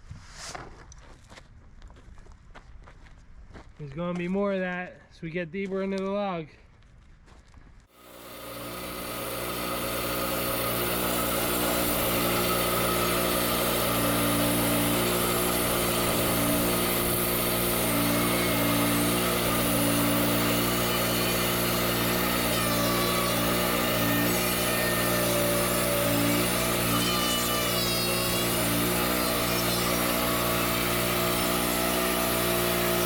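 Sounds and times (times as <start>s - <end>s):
band sawmill sawing log: 8.0s - 33.0s.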